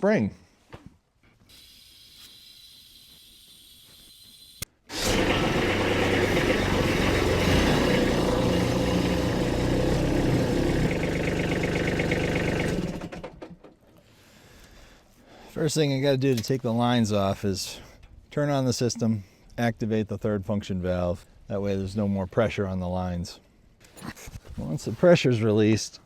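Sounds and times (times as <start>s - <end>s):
tractor diesel engine running: 4.9s - 13.6s.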